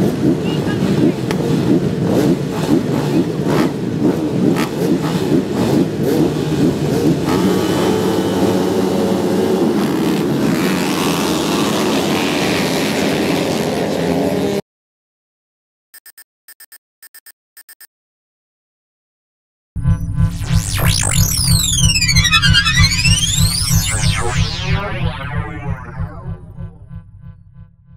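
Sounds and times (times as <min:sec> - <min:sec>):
motocross bike engines revving: 0:00.0 - 0:14.6.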